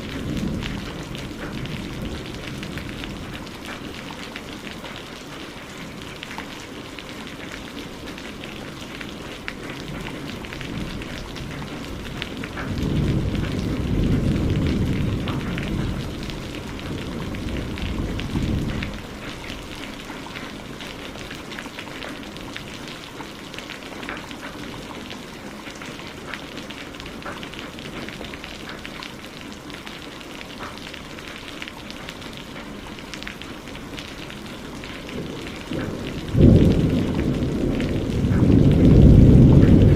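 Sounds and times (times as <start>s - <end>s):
thunder rumble: 0.0s - 3.7s, 9.8s - 19.9s, 34.5s - 39.9s
rain patter: 0.0s - 39.9s.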